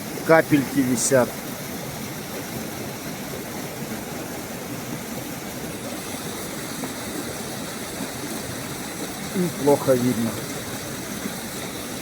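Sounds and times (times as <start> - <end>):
stream babbling: 0.0 - 12.0.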